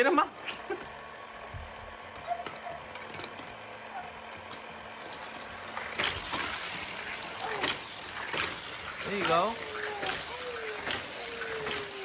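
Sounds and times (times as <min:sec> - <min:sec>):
toy motor whirring: 0:00.0 - 0:12.0.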